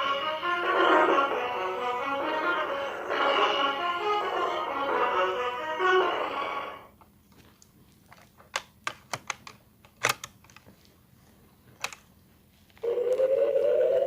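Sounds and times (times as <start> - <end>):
plastic toy clicks: 8.5 - 10.6, 11.8 - 12.0
toy electronic rising tone: 12.8 - 14.0.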